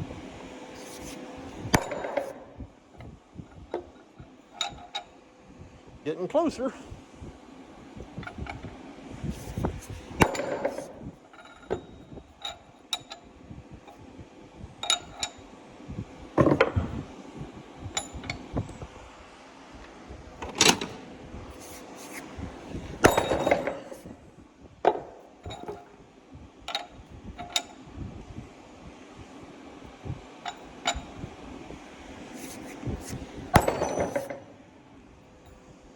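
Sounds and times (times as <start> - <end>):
hammer striking steel: 33.6 - 34.5.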